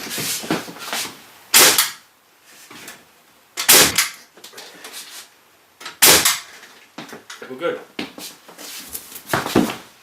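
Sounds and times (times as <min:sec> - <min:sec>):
pneumatic nail gun firing: 0:01.5 - 0:02.0, 0:03.6 - 0:04.2, 0:05.9 - 0:06.5.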